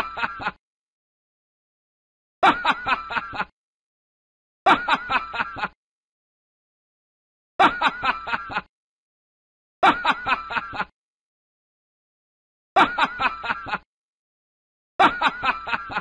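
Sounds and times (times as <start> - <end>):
evil laugh: 0.0 - 0.6, 2.4 - 3.5, 4.7 - 5.8, 7.6 - 8.7, 9.8 - 10.9, 12.8 - 13.9, 15.0 - 16.0.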